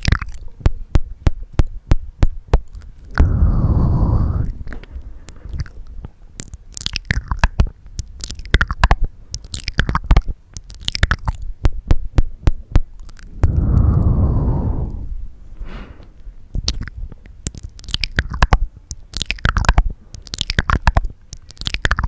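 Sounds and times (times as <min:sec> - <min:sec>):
tongue clicks and lip smacks: 0:00.0 - 0:03.3, 0:05.3 - 0:13.4, 0:16.5 - 0:22.0
breath onto microphone: 0:03.1 - 0:05.3, 0:13.3 - 0:16.4.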